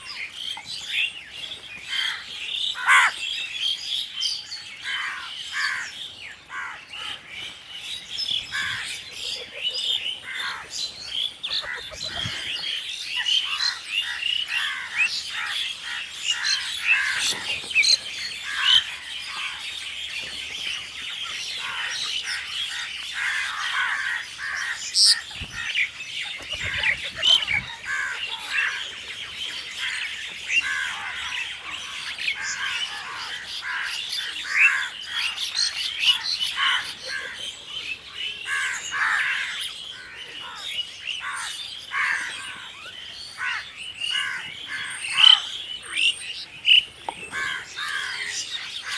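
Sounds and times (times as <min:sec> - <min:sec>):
chirping chorus: 0:00.0 - 0:48.9
crows cawing: 0:02.8 - 0:03.2, 0:10.2 - 0:10.7, 0:11.5 - 0:12.6, 0:13.4 - 0:17.4, 0:21.6 - 0:25.8, 0:26.4 - 0:28.8, 0:29.8 - 0:35.4, 0:36.0 - 0:37.5, 0:38.5 - 0:42.6, 0:43.4 - 0:45.5, 0:47.3 - 0:48.9.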